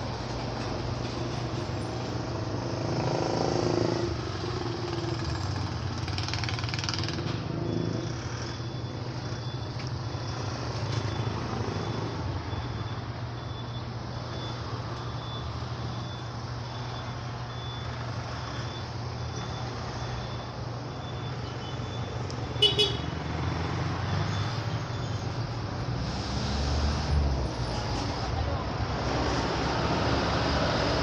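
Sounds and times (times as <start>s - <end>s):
vehicle engine rumbling: 0.0s - 31.0s
reversing alarm beeps: 7.4s - 25.5s.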